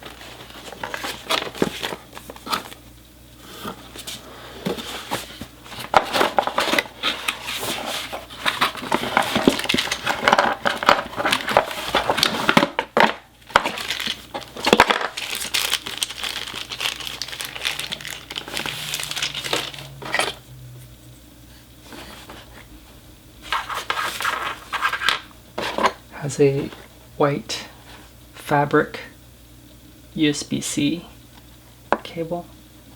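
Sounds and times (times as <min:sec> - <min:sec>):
plastic wrapping crinkling: 0:04.7 - 0:20.4.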